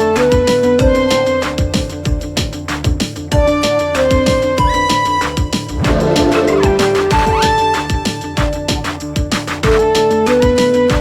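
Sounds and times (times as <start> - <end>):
electronic drum beat: 0.0 - 11.0
held synth melody notes: 3.4 - 8.9.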